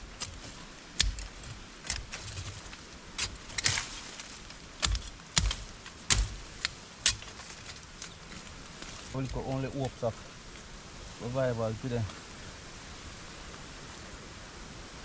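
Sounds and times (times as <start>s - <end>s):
dull thuds: 0.0s - 9.6s.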